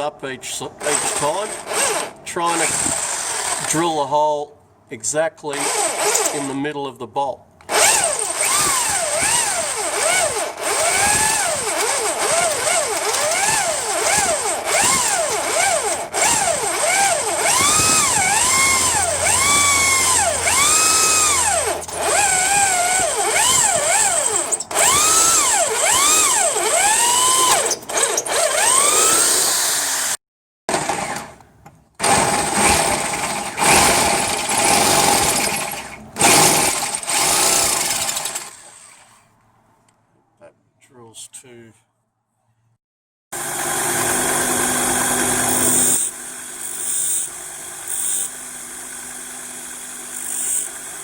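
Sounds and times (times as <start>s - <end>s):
power drill bit squealing: 7.7s - 30.2s.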